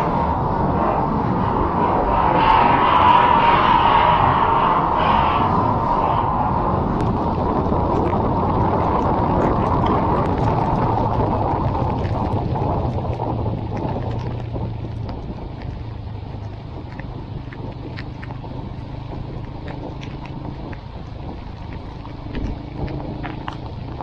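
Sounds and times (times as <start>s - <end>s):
motorcycle engine hum: 0.0s - 24.0s
wind and road noise: 0.0s - 24.0s
small ticks: 7.9s - 24.0s.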